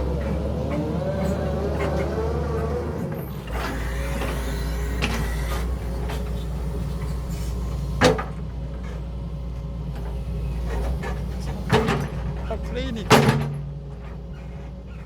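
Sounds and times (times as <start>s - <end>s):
excavator diesel engine running: 0.0s - 15.0s.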